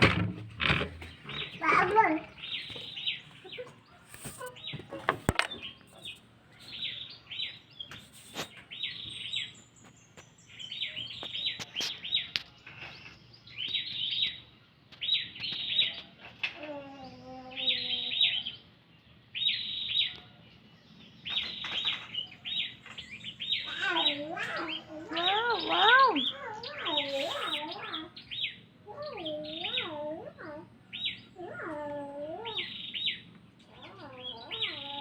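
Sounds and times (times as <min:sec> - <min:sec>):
bird high rapid chirping: 0:21.2 - 0:30.0.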